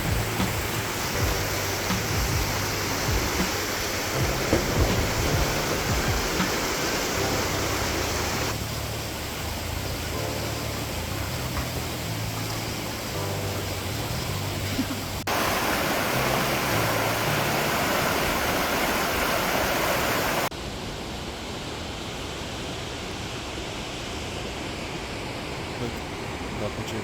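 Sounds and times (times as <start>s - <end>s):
waterfall rushing: 0.0s - 20.8s.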